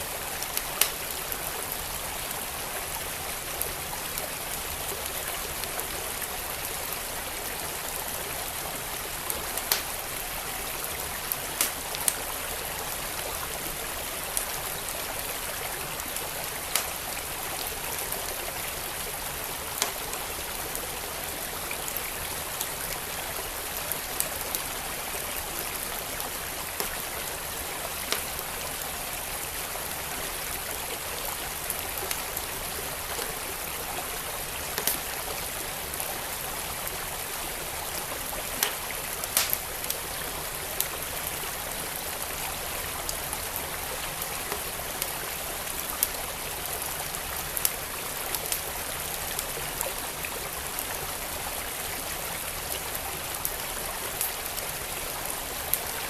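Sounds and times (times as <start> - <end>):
flowing stream: 0.0 - 56.0
wood fire crackling and popping: 0.8 - 1.2, 9.4 - 10.1, 11.4 - 12.3, 16.6 - 17.0, 19.8 - 20.1, 28.0 - 28.4, 34.8 - 35.1, 38.6 - 40.0.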